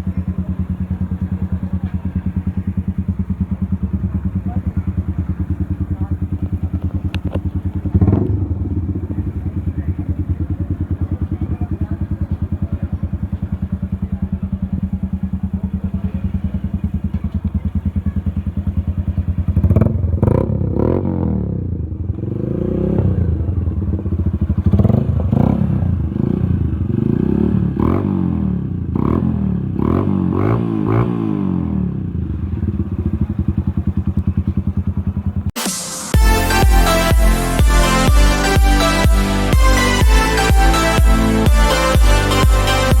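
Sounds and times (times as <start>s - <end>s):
motorcycle idling: 0.0s - 43.0s
motorcycle throttle blips: 0.0s - 43.0s.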